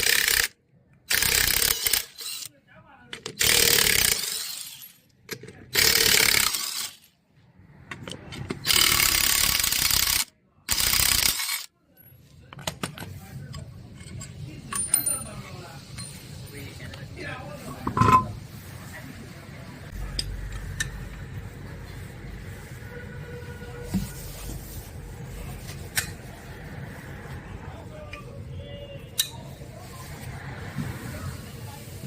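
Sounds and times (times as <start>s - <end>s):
impact wrench rattling: 3.2s - 7.1s, 8.5s - 11.7s
metal clinking: 14.0s - 16.5s.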